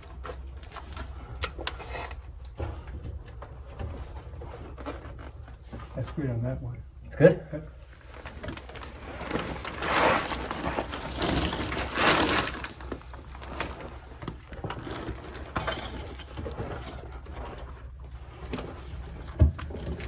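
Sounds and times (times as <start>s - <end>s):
rough scraping of cover: 8.2s - 17.7s.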